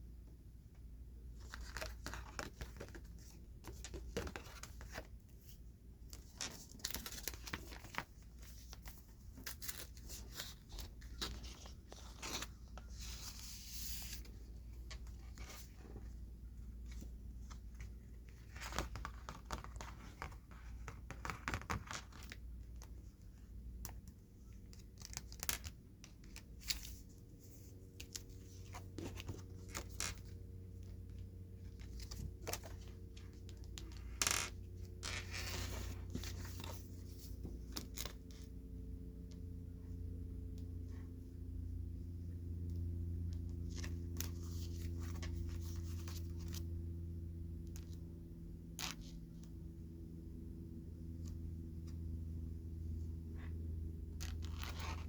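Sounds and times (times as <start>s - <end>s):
cards tapping and clicking: 1.5s - 5.1s.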